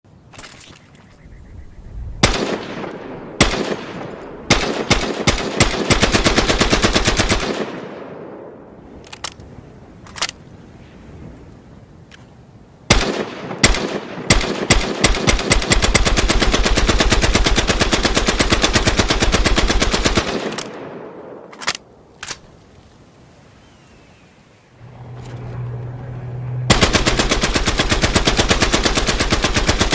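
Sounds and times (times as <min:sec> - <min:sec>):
machine gun firing: 0:02.2 - 0:07.9, 0:12.9 - 0:20.9, 0:26.6 - 0:29.9.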